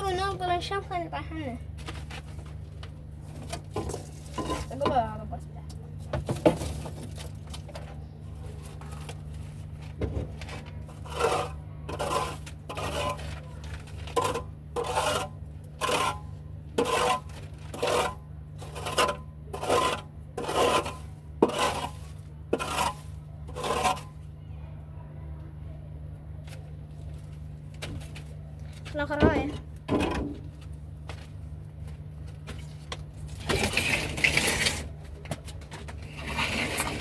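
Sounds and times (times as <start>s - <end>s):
dirt scraping on hard floor: 8.6s - 24.2s, 32.3s - 37.0s.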